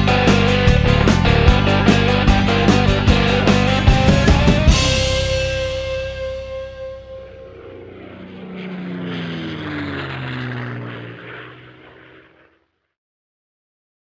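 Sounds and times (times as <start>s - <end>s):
model plane motor whine flying past: 4.7s - 12.9s.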